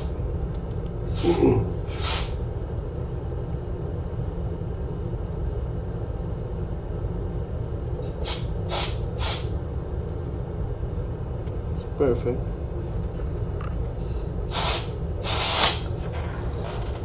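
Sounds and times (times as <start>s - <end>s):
workbench equipment humming: 0.0s - 17.0s
short hissing puffs: 1.1s - 2.4s, 8.0s - 9.5s, 14.0s - 15.9s.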